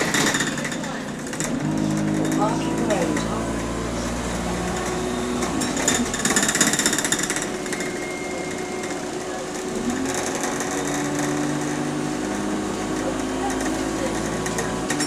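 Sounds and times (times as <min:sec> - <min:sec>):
rapid rattling clatter: 0:00.0 - 0:12.0
bus engine and drivetrain: 0:00.0 - 0:15.0.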